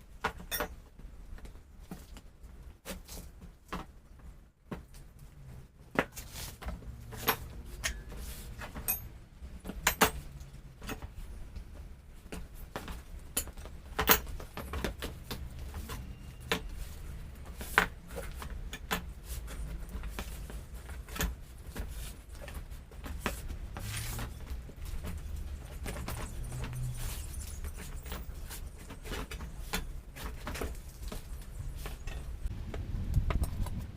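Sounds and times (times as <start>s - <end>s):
metal tools clinking and knocking: 0.4s - 0.8s, 8.7s - 11.1s
steady low rumble: 32.4s - 33.9s.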